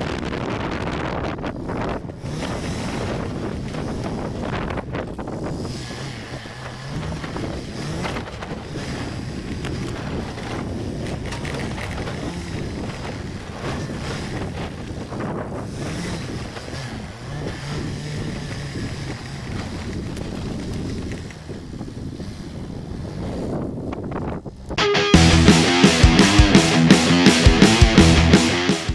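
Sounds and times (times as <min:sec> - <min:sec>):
wind buffeting microphone: 0:00.0 - 0:24.8
vehicle engine running: 0:24.9 - 0:28.9.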